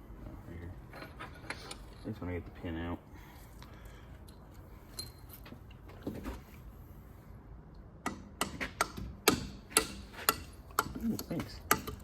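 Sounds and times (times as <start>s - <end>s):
faint metal clinks: 4.9s - 5.5s
hammer striking metal punch: 8.0s - 11.0s, 11.7s - 12.0s.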